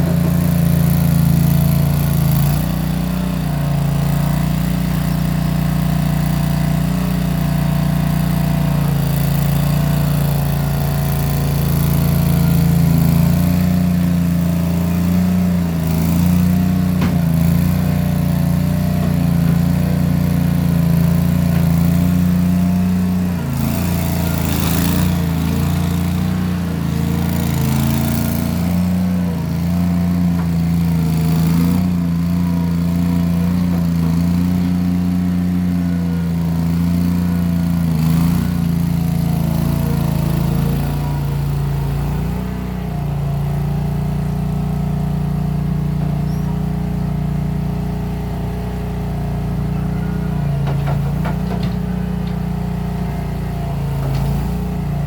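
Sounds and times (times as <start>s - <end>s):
skid steer engine running: 0.0s - 55.0s.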